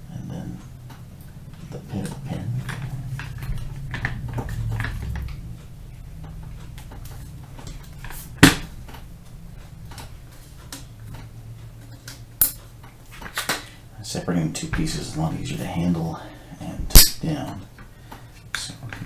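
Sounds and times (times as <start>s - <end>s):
low rumble: 1.1s - 8.1s
sharp loud metal click: 16.9s - 17.2s.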